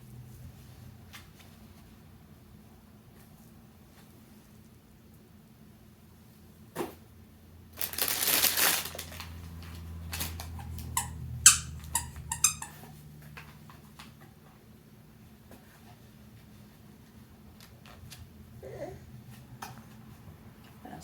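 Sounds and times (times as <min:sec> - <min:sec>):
squeaker toy squeaks: 0:10.6 - 0:12.9.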